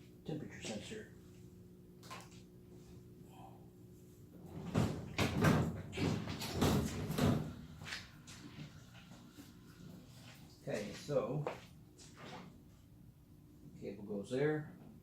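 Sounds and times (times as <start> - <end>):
cooling pumps humming: 0.0 - 15.0
objects clattering and rustling: 4.4 - 9.1.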